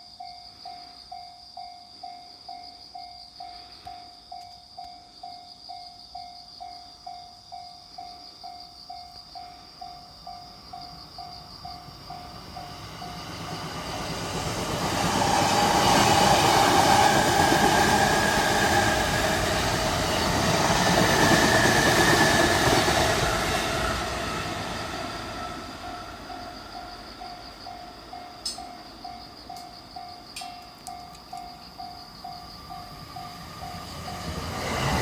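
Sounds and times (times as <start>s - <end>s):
level crossing warning bell: 0.0s - 22.8s, 25.7s - 34.5s
train passing: 9.4s - 35.0s.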